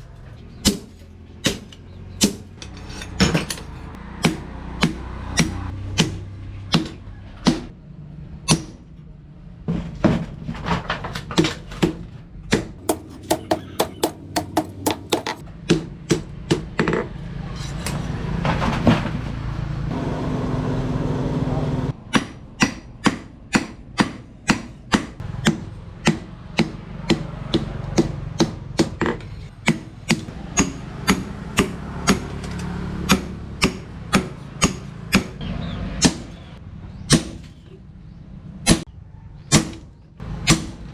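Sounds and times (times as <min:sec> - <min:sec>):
hammer striking steel on anvil: 0:00.6 - 0:02.8, 0:12.8 - 0:15.4, 0:30.5 - 0:32.3, 0:33.1 - 0:35.4.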